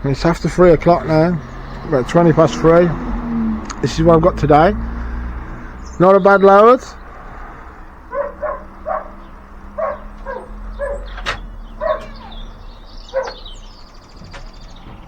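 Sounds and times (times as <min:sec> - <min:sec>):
dog barking: 0:08.1 - 0:11.2, 0:11.8 - 0:12.4, 0:13.1 - 0:13.6.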